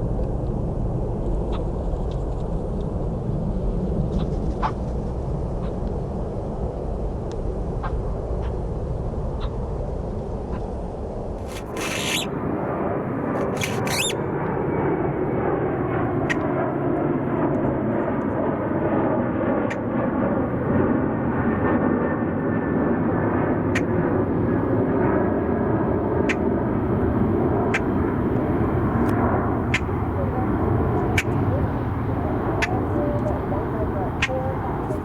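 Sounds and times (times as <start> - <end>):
sharp ticks: 11.4 - 12.3, 13.4 - 14.2
jet engine roar: 11.4 - 35.0.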